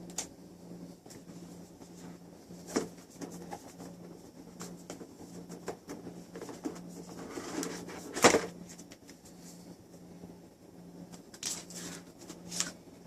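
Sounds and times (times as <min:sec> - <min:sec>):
cardboard rustling and tapping: 0:02.6 - 0:09.2.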